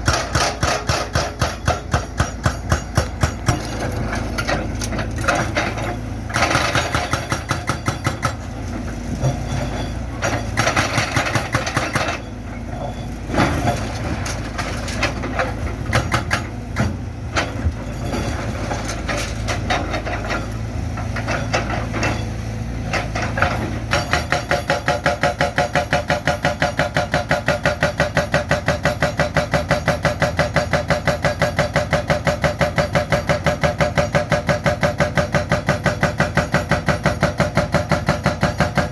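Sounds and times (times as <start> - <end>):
concrete breaking clanks and scrapes: 0.0 - 27.2
excavator engine under load: 0.0 - 38.9.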